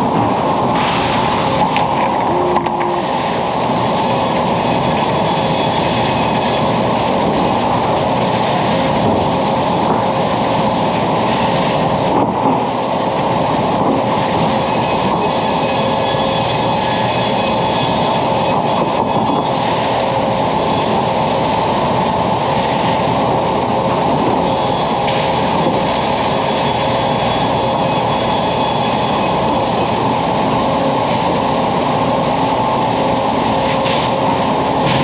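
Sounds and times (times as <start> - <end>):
band saw and log carriage: 0.0 - 23.2, 23.8 - 35.0.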